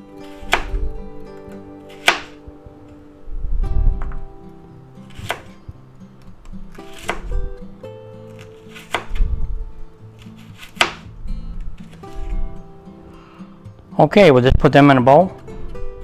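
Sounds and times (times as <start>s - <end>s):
background music: 0.0s - 16.0s
knife slicing carrots on board: 0.2s - 0.9s, 1.8s - 2.5s, 5.0s - 5.6s, 6.4s - 7.5s, 8.3s - 9.4s, 10.2s - 11.1s, 11.8s - 12.5s.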